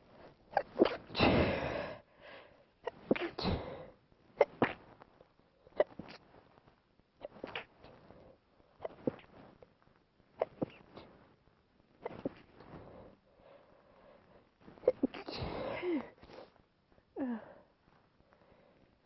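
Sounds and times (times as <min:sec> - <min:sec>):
person sneezing: 0:00.6 - 0:01.7.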